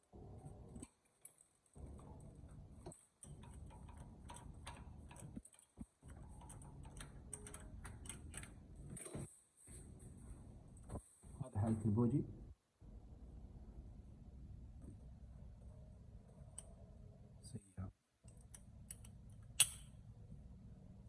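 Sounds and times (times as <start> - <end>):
hand tools clicking on metal: 0.8 - 8.6.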